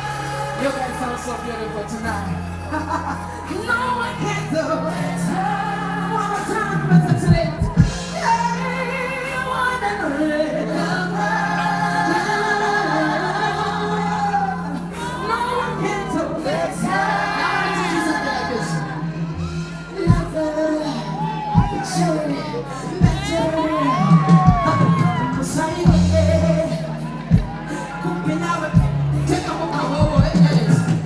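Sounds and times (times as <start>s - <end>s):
live pop music with singing: 0.0s - 31.0s.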